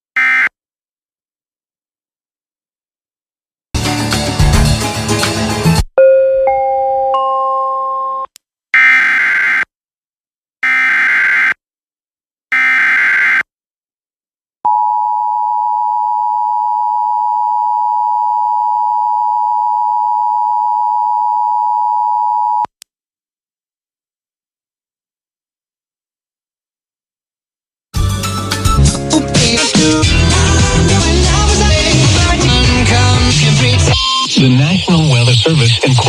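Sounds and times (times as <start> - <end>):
digital data bursts: 33.8 - 36.0.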